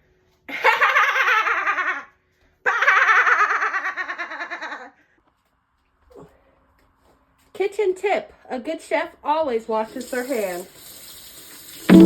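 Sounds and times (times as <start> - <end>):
high cackling laugh: 0.5 - 2.1, 2.7 - 5.0.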